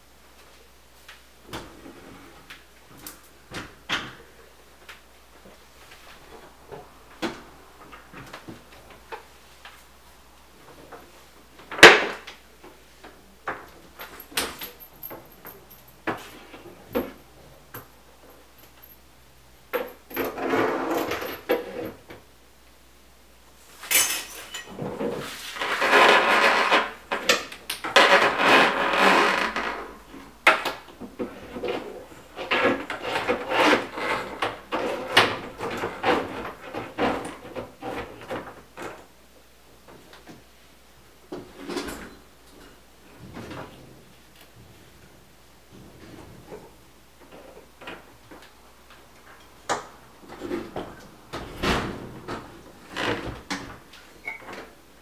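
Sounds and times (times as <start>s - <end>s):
scraping and rubbing: 24.7s - 27.3s.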